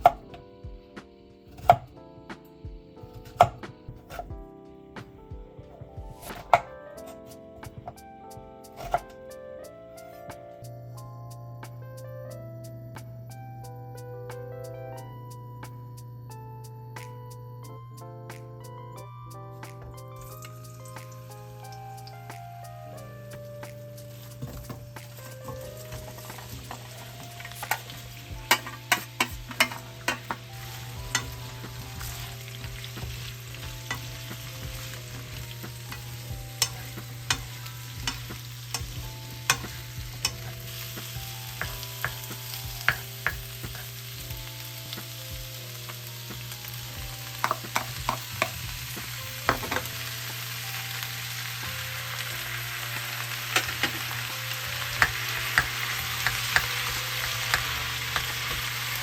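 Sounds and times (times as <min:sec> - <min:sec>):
food sizzling in hot oil: 0:20.1 - 0:59.0
spatula clacking against pan: 0:27.4 - 0:30.5, 0:31.1 - 0:31.4, 0:32.8 - 0:43.9, 0:47.4 - 0:48.6, 0:55.0 - 0:58.9.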